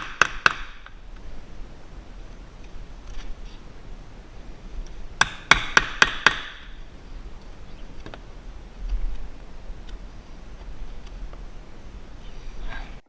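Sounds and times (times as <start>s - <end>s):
hammer striking a chisel: 0.0s - 0.9s, 5.2s - 6.7s.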